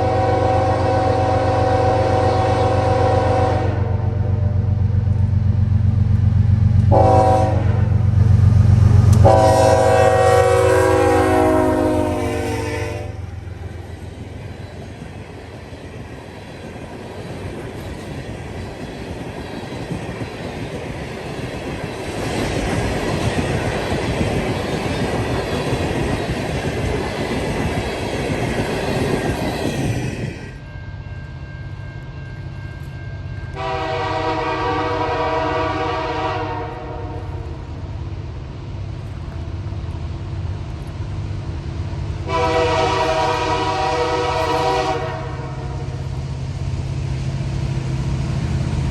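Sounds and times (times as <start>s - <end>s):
train air horn blasts: 0.0s - 4.4s, 6.9s - 8.0s, 9.2s - 13.3s, 33.5s - 37.4s, 42.2s - 46.0s
train wheels rolling on rails: 0.0s - 48.9s.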